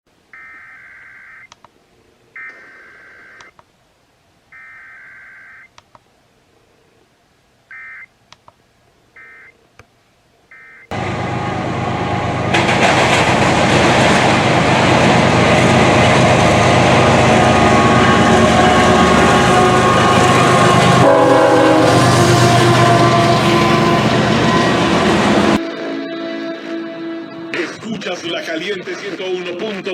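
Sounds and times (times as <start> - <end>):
radio music: 23.6 - 29.9.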